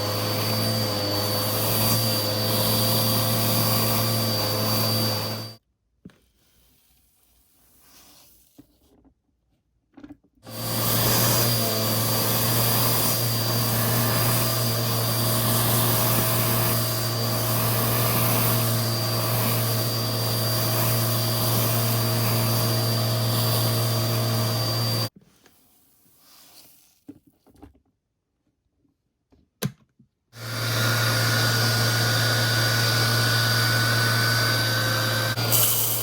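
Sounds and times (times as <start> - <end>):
vacuum cleaner running: 0.0 - 5.6, 10.5 - 25.1, 30.4 - 36.0.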